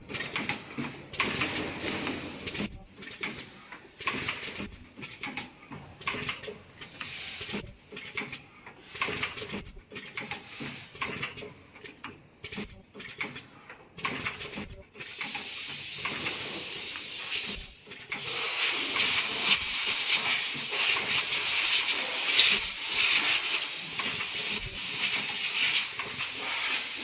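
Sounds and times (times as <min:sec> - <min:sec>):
spot welding machine bursts: 0:15.0 - 0:27.0.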